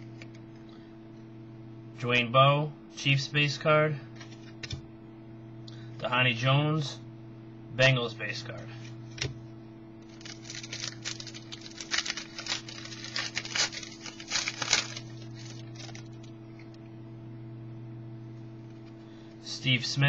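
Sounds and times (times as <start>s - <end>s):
steady electrical hum: 0.0s - 20.0s
trading cards rustling: 10.0s - 16.3s.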